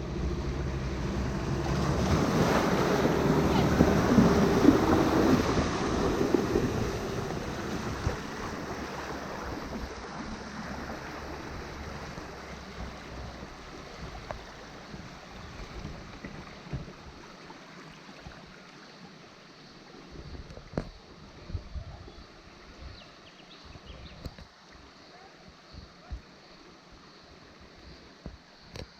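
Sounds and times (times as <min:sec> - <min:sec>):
water splashing and churning: 0:00.0 - 0:19.4.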